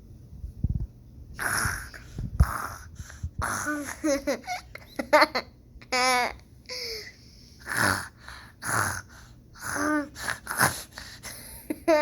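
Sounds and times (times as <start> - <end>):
child fake snoring: 1.4 - 4.0, 7.6 - 11.4.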